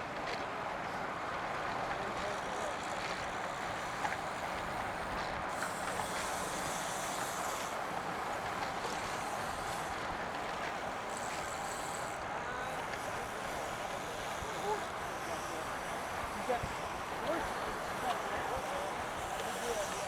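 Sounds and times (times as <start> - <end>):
bicycle tyre noise on road: 3.4 - 12.2, 12.9 - 17.4.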